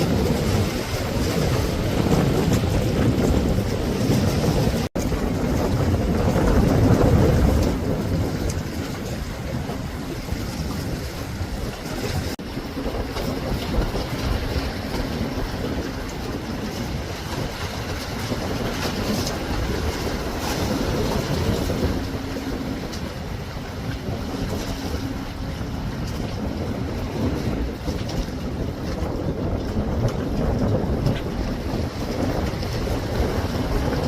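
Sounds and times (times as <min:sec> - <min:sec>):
sea waves against breakwater: 0:00.0 - 0:34.0
wind buffeting microphone: 0:00.0 - 0:34.0.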